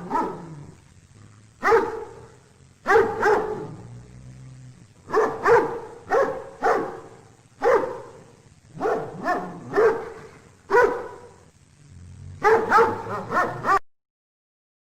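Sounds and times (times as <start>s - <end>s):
dog barking: 0.0s - 0.8s, 1.6s - 3.8s, 5.1s - 11.4s, 12.4s - 13.8s.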